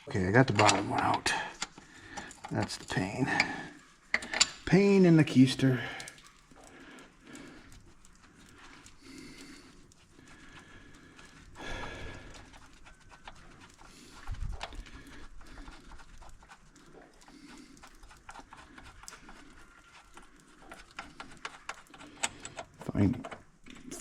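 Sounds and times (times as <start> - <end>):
tools and bolts clinking: 0.0 - 4.7.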